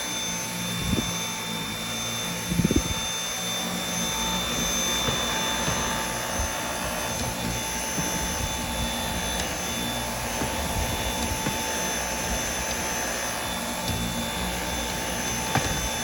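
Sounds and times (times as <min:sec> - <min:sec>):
vacuum cleaner motor whine: 0:00.0 - 0:16.0.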